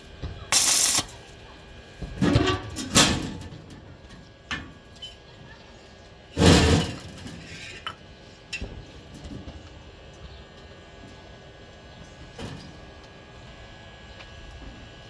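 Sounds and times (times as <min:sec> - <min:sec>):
steel pieces clanking: 0:00.5 - 0:01.2.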